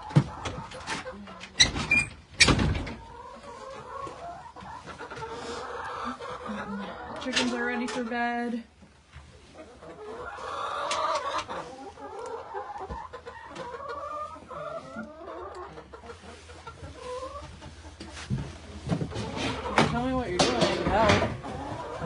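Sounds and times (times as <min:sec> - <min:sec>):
chickens clucking: 0:00.0 - 0:22.0.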